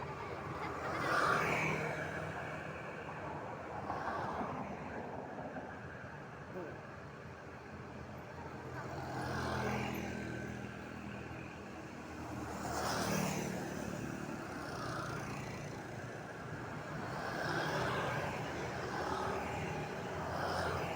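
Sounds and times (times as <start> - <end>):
vehicles passing: 8.6 - 20.9.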